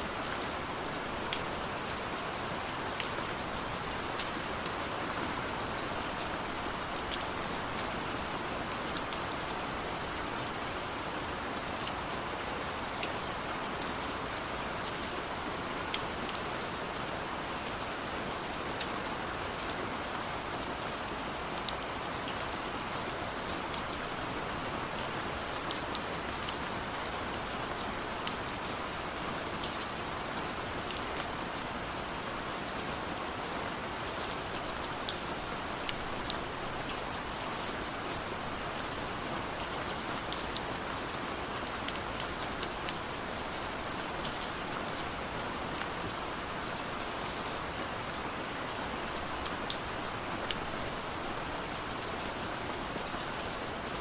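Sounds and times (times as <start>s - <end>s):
steady rain hiss: 0.0s - 54.0s.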